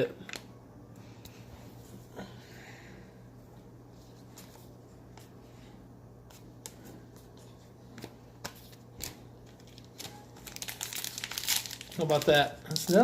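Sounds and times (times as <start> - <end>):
trading cards being flipped: 6.2 - 12.4.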